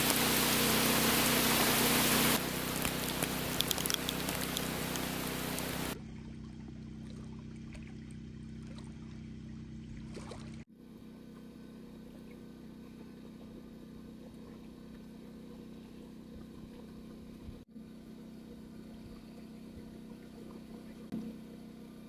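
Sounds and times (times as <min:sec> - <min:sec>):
heavy rain hissing and pattering: 0:00.0 - 0:06.0
water dripping and trickling: 0:00.0 - 0:06.0
steady low hum: 0:00.0 - 0:14.9.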